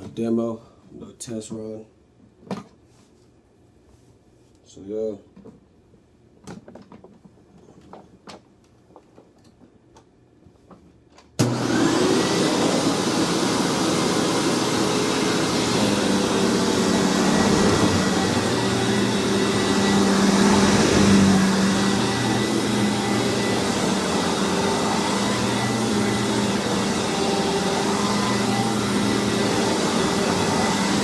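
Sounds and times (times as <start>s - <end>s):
vacuum cleaner running: 11.4s - 31.0s.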